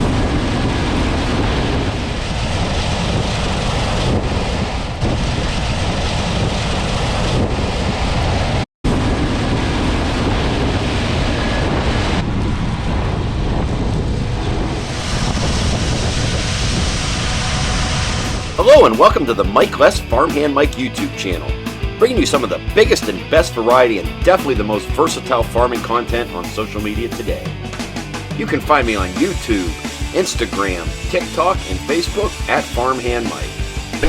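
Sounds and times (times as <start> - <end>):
wind buffeting microphone: 0.0 - 20.3.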